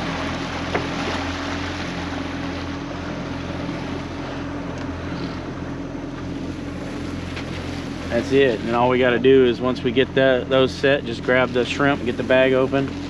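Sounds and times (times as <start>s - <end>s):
boat motor humming: 0.0s - 13.0s
wind and water rushing: 0.0s - 13.0s.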